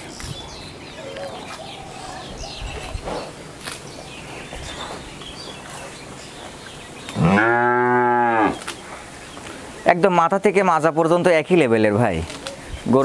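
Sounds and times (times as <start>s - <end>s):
cow mooing: 7.2s - 8.6s.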